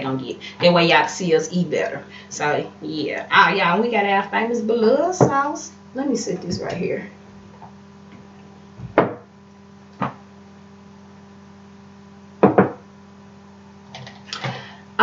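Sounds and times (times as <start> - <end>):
containers set down on table: 12.4 - 12.8.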